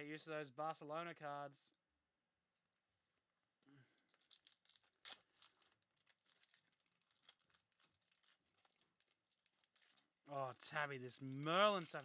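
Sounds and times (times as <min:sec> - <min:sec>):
wrapper tearing and crinkling: 0:03.8 - 0:12.0.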